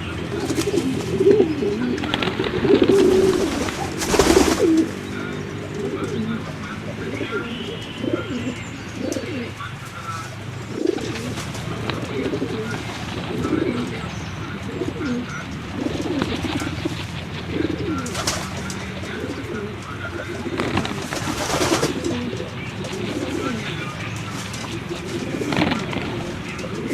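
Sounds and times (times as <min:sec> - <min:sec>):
pigeons cooing: 0:00.0 - 0:26.9
rustling burst: 0:01.9 - 0:05.0, 0:15.0 - 0:19.7, 0:20.3 - 0:26.9.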